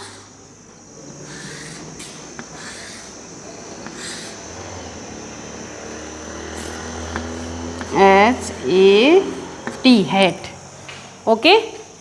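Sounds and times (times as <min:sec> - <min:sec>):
faint high whine: 0:00.0 - 0:12.0
pen scratching while writing: 0:01.3 - 0:03.1, 0:03.8 - 0:04.4.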